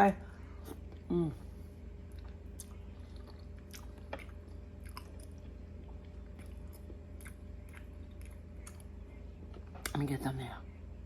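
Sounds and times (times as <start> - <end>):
low hum: 0.0 - 11.0
chewing food: 2.0 - 10.0.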